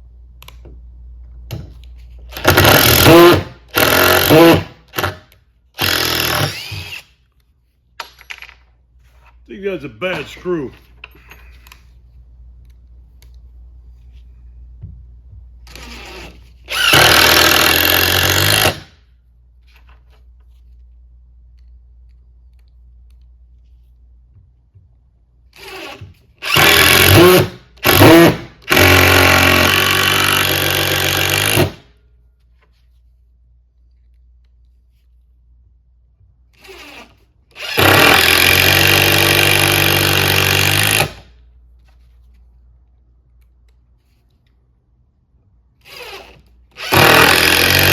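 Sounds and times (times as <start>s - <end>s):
impact driver hammering buzz: 2.3s - 7.1s, 15.7s - 19.0s, 25.6s - 31.8s, 36.6s - 41.3s, 45.8s - 47.9s.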